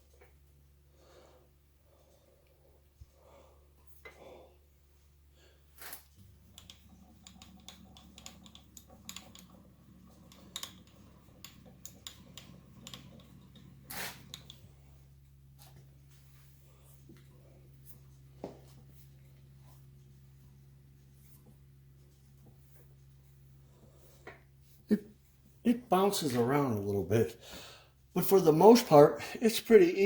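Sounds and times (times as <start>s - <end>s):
low steady hum: 0.0s - 30.0s
hand-cranked machine table clicking: 6.3s - 14.7s.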